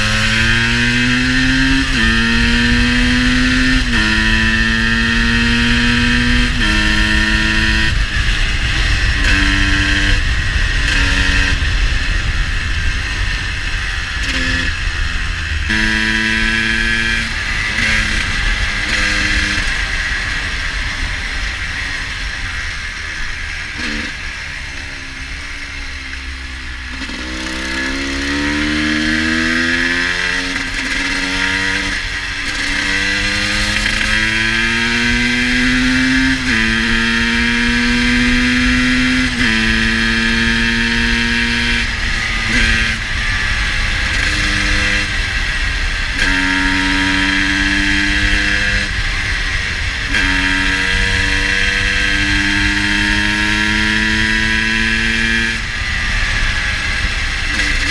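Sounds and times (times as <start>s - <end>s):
two-stroke motorbike engine revving: 0.0s - 57.9s
low rushing noise: 6.2s - 29.4s.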